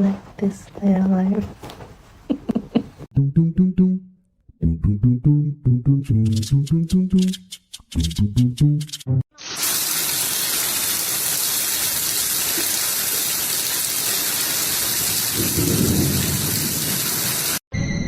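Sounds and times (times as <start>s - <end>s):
rushing hiss of falling water: 9.4s - 17.6s.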